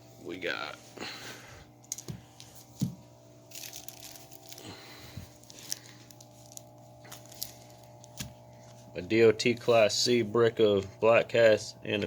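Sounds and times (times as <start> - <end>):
paper wrapping crinkling: 3.5 - 9.9.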